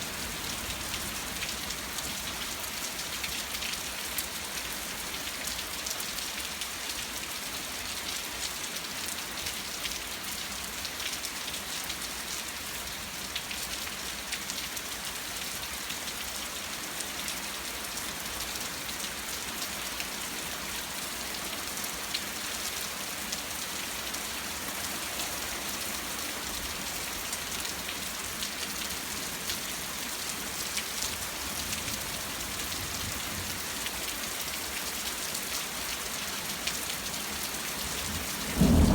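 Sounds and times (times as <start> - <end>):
heavy rain falling: 16.4 - 38.9.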